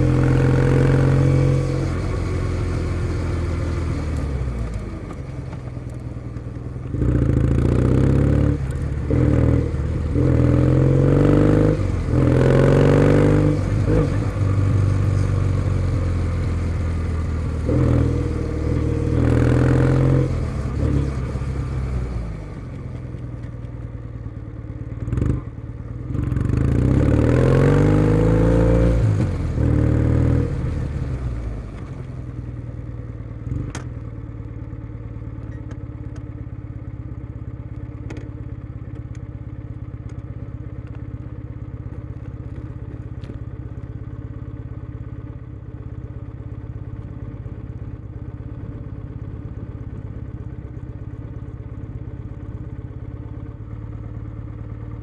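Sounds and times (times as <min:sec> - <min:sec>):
motorcycle engine revving: 0:00.0 - 0:05.7, 0:06.8 - 0:23.0, 0:24.9 - 0:32.0.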